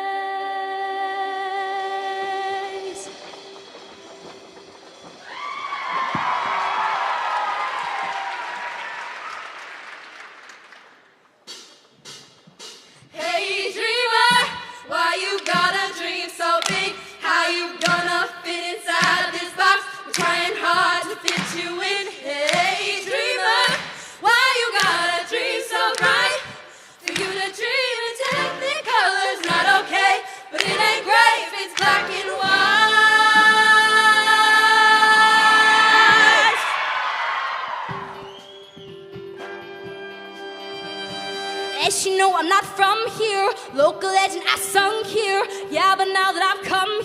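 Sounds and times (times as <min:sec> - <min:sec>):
choir singing: 0:13.2 - 0:38.4.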